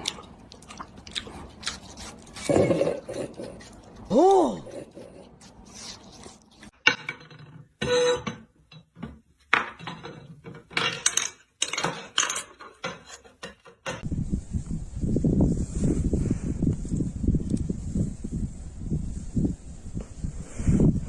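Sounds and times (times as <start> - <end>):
low rustling noise: 14.1 - 21.0.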